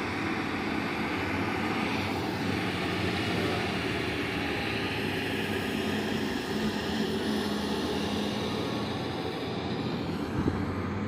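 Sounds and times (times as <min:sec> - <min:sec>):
heavy diesel engines droning: 0:00.0 - 0:11.0.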